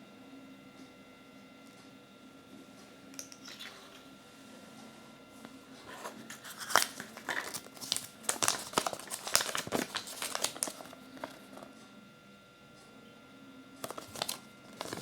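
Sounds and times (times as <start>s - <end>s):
foil wrapping crinkling and tearing: 6.1s - 11.6s, 13.8s - 15.0s.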